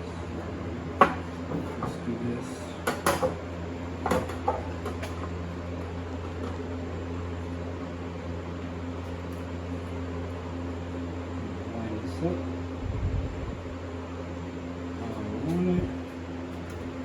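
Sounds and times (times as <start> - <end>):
low machine hum: 0.0 - 17.0.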